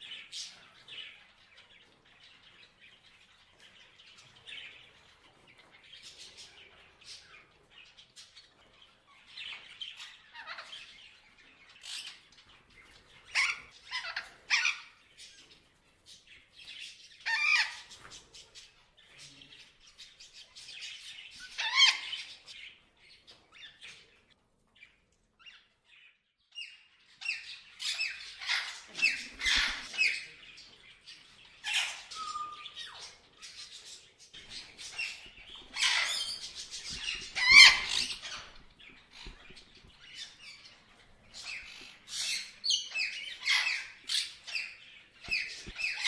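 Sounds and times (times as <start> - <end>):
parrots chirping and squawking: 6.2 - 15.4, 16.6 - 18.8, 19.6 - 22.6, 26.5 - 46.0.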